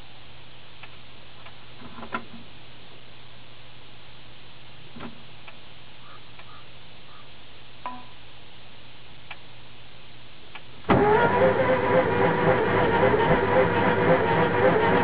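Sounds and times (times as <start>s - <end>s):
engine cranking on starter: 10.9s - 15.0s.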